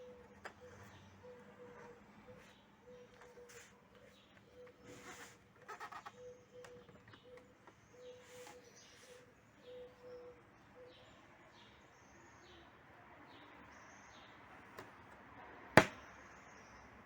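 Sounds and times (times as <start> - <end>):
faint birds chirping: 0.0 - 17.0.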